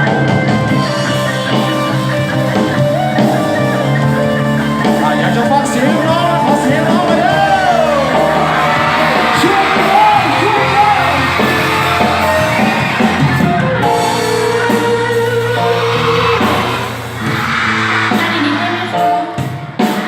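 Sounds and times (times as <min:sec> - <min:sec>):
guitar: 0:00.0 - 0:20.0
person singing: 0:04.8 - 0:12.4.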